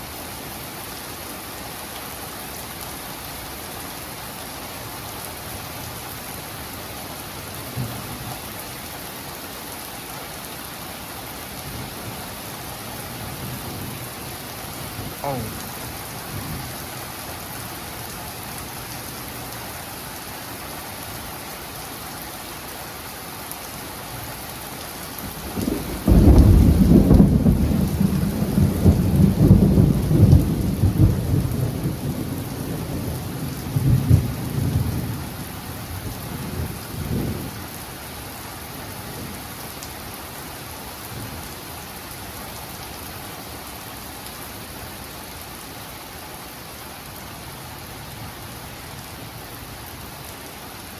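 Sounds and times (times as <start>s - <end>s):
heavy rain: 0.0s - 50.9s
thunderclap with rolling rumble: 7.7s - 8.4s, 25.3s - 37.6s.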